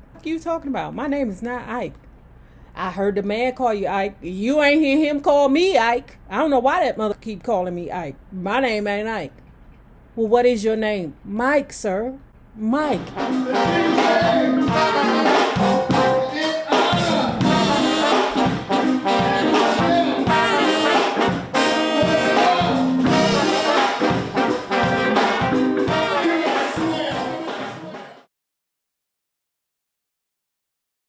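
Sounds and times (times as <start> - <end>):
brass music over a beat: 13.0 - 28.3.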